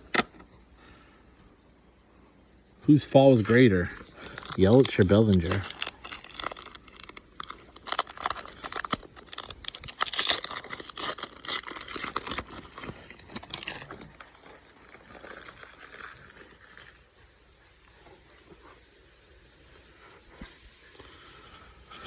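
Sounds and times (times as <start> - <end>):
foil wrapper crinkling and tearing: 3.0 - 14.1
faint rustling: 3.2 - 13.9.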